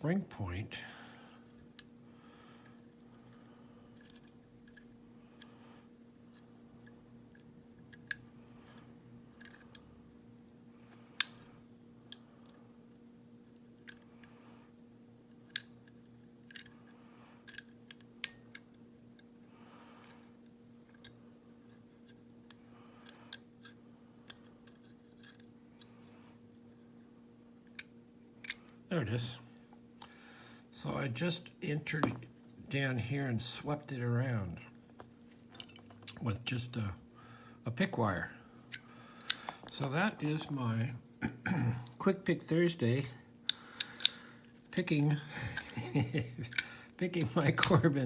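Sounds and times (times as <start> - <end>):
low steady hum: 0.0 - 48.0
pick clicking inside padlock: 43.8 - 44.2, 47.4 - 47.8.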